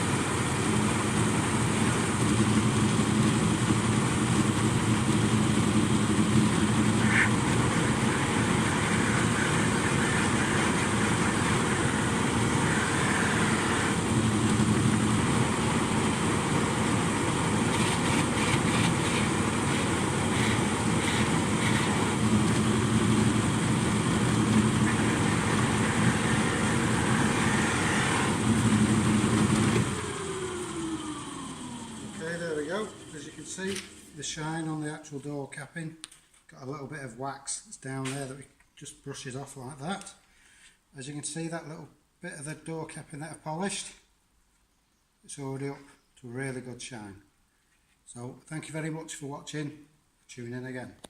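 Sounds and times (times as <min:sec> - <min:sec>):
polishing machine running: 0:00.0 - 0:34.2
wood buffed against spinning mop: 0:00.5 - 0:34.2.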